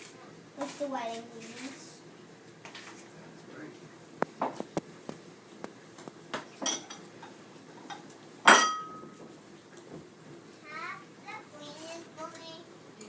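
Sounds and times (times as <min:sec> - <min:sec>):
utensils clinking against mixing bowl: 0:06.6 - 0:09.2.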